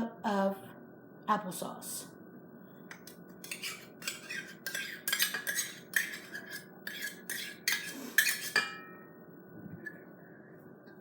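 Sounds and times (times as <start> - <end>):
utensil scraping a dish: 3.4 - 8.8.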